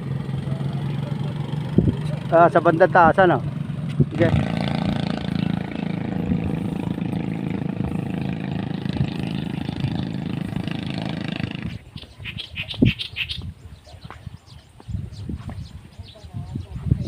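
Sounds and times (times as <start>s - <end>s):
small engine running: 0.0s - 11.8s.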